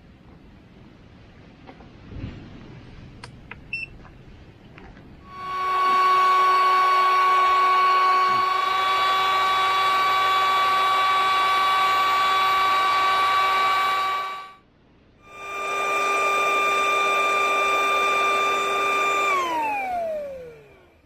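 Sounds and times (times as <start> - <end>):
small electric motor whining: 5.2 - 14.6, 15.3 - 21.0.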